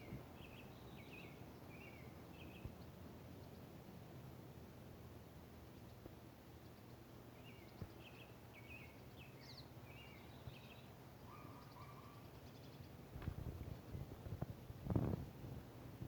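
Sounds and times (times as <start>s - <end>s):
songbird chirping: 0.0s - 3.8s, 5.6s - 14.2s.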